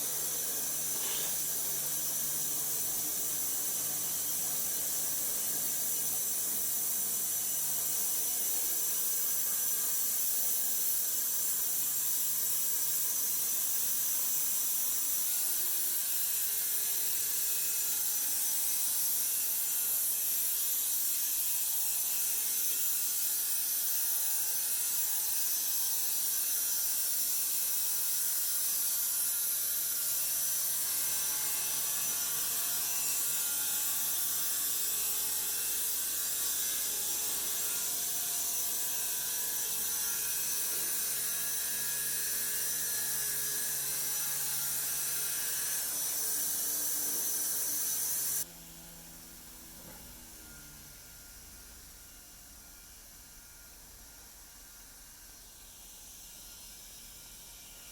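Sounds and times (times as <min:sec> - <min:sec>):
woodworking machinery hiss: 0:00.0 - 0:11.0.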